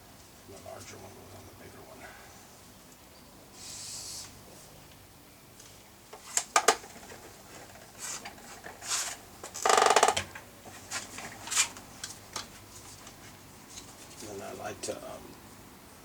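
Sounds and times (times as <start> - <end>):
small clicks and knocks: 5.6 - 10.5.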